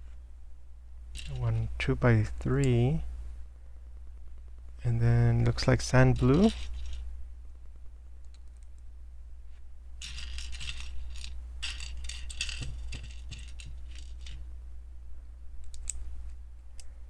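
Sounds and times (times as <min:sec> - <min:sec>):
plastic pieces clicking and clattering: 0:01.2 - 0:01.4, 0:06.1 - 0:07.1, 0:10.0 - 0:14.5.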